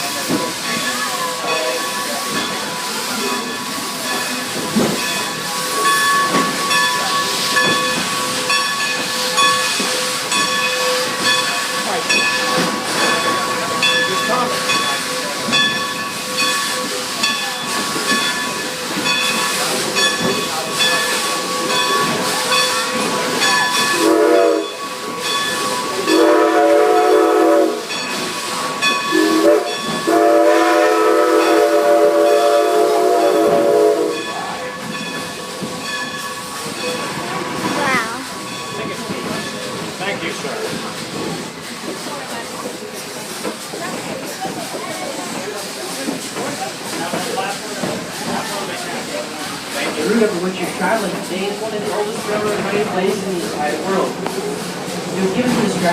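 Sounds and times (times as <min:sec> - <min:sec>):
train clattering on rails: 0:00.0 - 0:55.9
steam locomotive whistle: 0:23.7 - 0:24.9, 0:25.9 - 0:28.0, 0:29.1 - 0:34.4.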